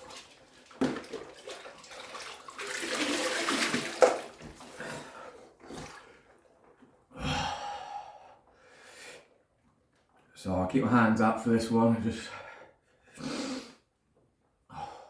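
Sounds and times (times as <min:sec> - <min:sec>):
water sloshing and splashing: 0:00.0 - 0:07.1.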